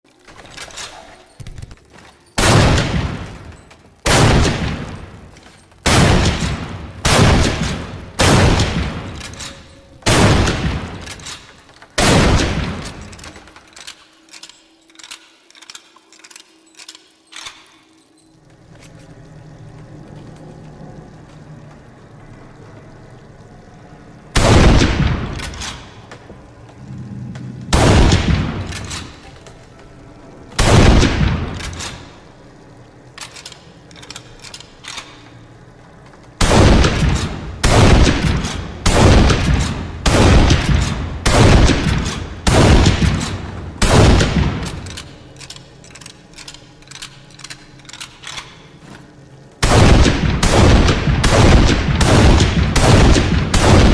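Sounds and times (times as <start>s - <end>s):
shotgun firing: 5.9s - 9.2s, 10.1s - 11.3s, 12.0s - 13.0s, 27.8s - 29.0s, 30.6s - 31.8s, 36.4s - 44.8s, 49.6s - 53.9s
small clicks: 7.5s - 27.6s, 28.5s - 49.6s.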